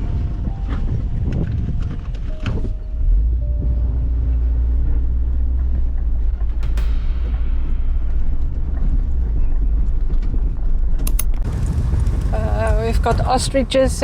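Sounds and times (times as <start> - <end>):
vehicle rumbling on sand track: 11.4 - 14.0.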